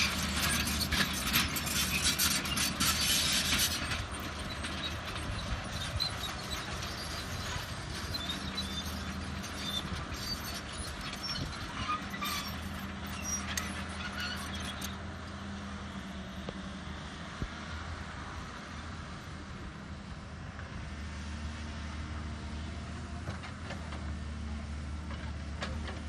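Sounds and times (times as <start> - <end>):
metallic squeaks and clanks: 0.0 - 15.1
excavator diesel engine running: 0.0 - 26.0.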